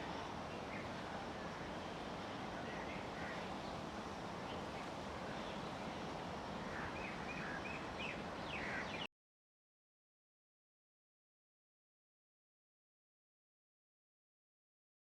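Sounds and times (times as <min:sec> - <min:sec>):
outdoor background hiss: 0:00.0 - 0:09.1.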